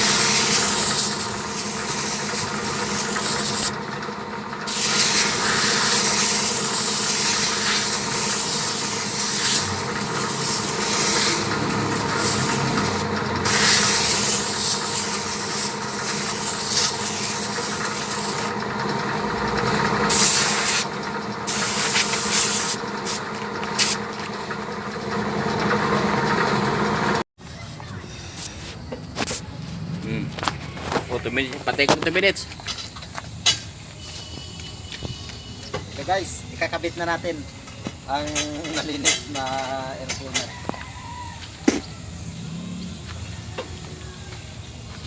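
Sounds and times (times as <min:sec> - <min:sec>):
compressed air hissing: 0:00.0 - 0:03.7, 0:04.7 - 0:18.5, 0:20.0 - 0:24.0.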